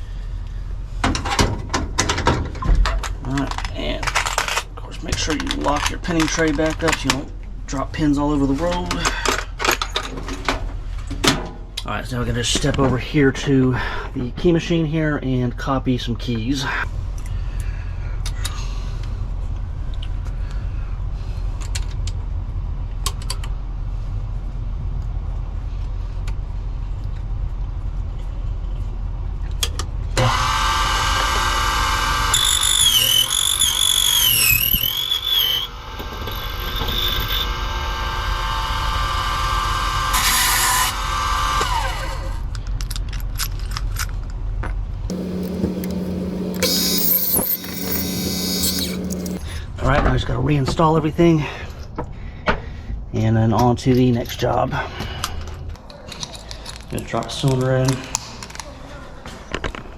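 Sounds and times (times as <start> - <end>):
key cutter whining: 30.2 - 42.4, 45.1 - 49.5
steady low hum: 45.0 - 49.8.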